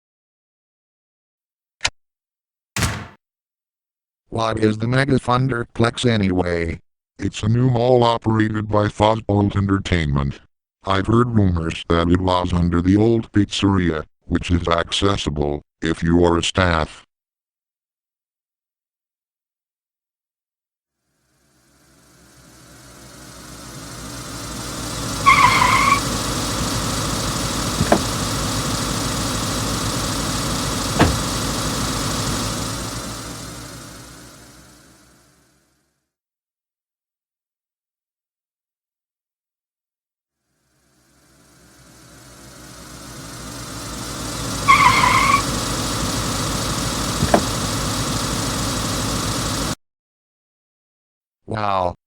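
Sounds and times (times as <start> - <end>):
short knock: 2.8 - 3.2, 27.8 - 28.1, 31.0 - 31.4
car engine and road noise: 21.9 - 35.3, 41.4 - 49.8
tyres squealing: 24.9 - 31.7, 44.4 - 47.7.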